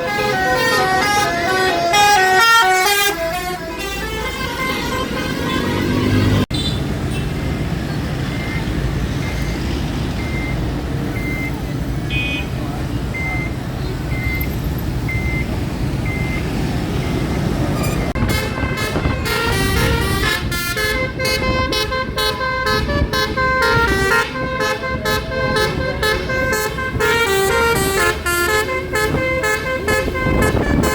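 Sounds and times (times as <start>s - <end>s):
musical bus horn tune: 0.0s - 6.6s, 17.8s - 30.9s
short beeps: 13.2s - 15.5s.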